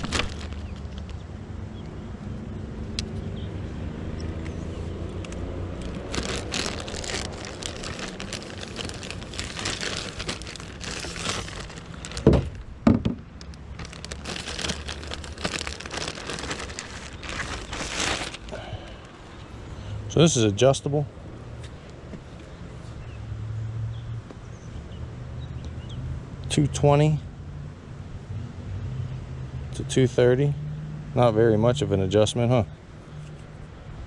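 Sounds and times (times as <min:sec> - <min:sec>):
gear rustling and crinkling: 0:00.0 - 0:01.3, 0:05.1 - 0:19.6
heavy thumps: 0:12.1 - 0:13.3.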